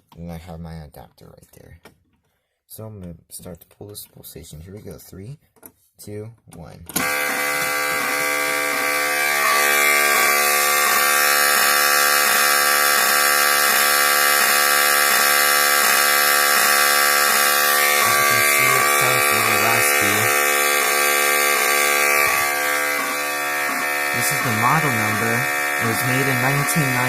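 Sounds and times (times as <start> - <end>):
deep raspy fire alarm horn: 7.0 - 27.0.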